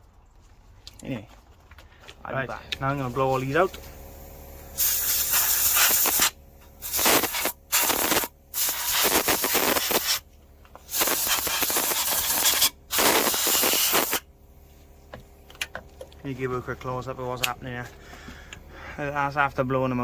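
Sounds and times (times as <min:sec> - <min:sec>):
compressed air blow gun hissing: 0:02.9 - 0:10.3, 0:10.9 - 0:14.3.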